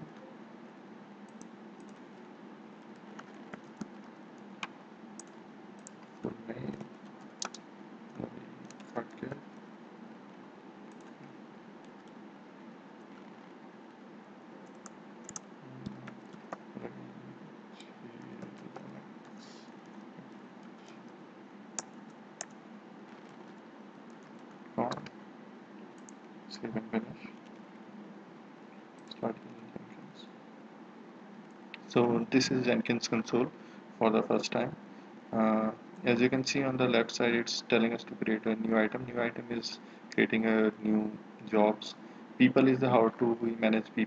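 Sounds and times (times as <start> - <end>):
faint steady hiss: 0.0 - 44.0
low hum: 0.0 - 44.0
keyboard keystroke clicks: 7.4 - 7.6.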